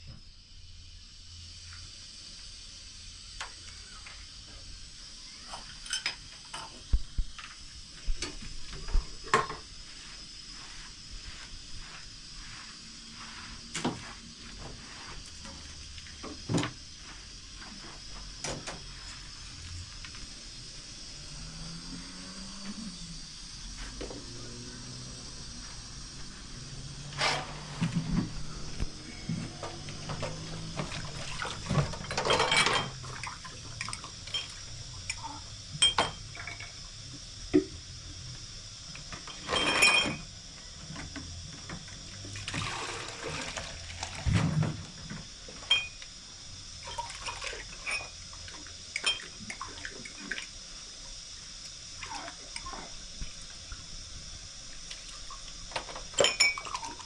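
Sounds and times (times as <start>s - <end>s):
water splashing and pouring: 30.8s - 32.2s, 42.4s - 44.5s
objects clinking and knocking: 31.6s - 33.1s, 39.2s - 40.2s, 45.6s - 46.0s, 55.8s - 57.0s.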